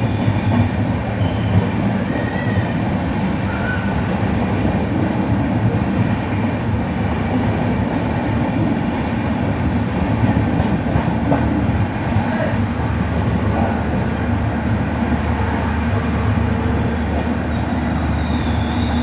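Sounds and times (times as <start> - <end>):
high-pitched wheel squeals: 0.0 - 4.4, 14.8 - 19.0
passenger train rumbling: 0.0 - 19.0.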